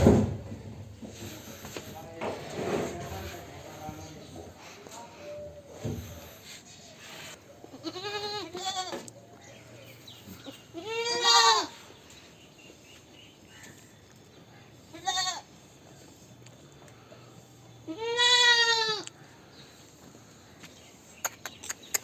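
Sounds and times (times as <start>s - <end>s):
goats bleating: 7.7s - 9.0s, 10.7s - 11.8s, 14.9s - 15.5s, 17.9s - 19.1s.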